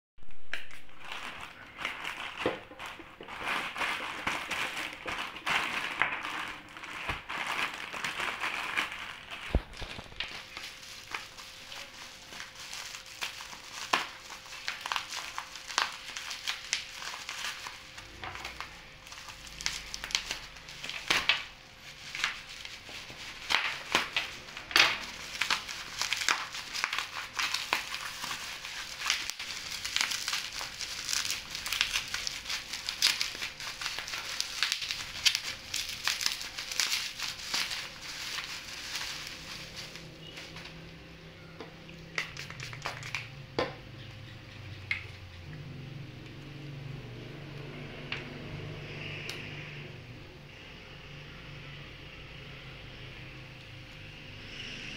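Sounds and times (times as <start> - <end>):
material crinkling and crackling: 0.2 - 43.4.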